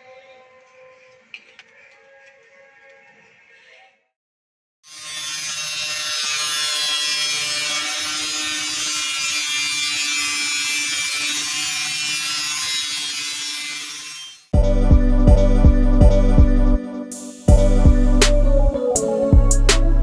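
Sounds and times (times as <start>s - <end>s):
welder buzz: 4.9s - 14.5s.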